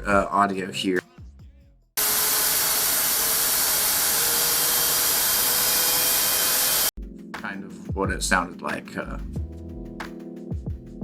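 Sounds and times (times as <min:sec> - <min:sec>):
loud whirring hiss: 0:02.0 - 0:06.9.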